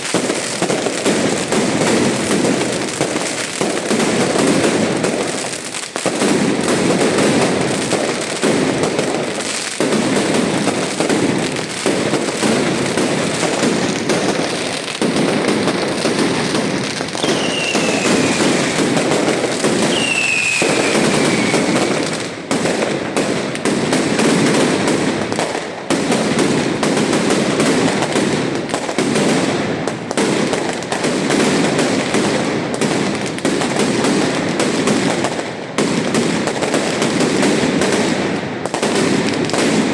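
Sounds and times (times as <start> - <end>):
fireworks bangs and crackling: 0.0 - 39.9
whistling rockets: 15.0 - 22.7.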